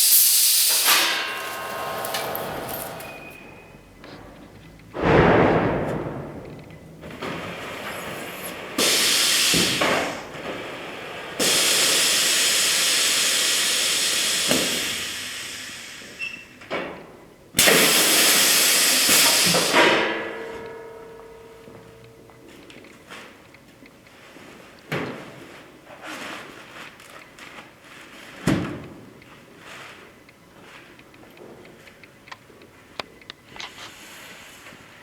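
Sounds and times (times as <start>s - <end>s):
air hissing: 0.0s - 3.8s, 5.0s - 16.6s, 17.6s - 20.4s
machine clunk: 0.6s - 11.7s, 19.1s - 22.1s
machine knocks: 0.9s - 3.5s, 4.9s - 10.1s.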